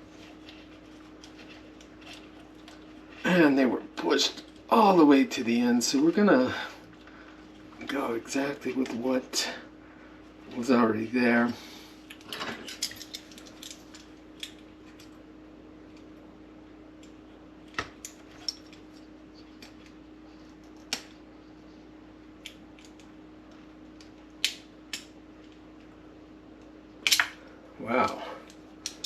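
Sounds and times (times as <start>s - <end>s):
faint steady hum: 0.0s - 29.0s
clicks of handling small parts: 12.1s - 15.1s.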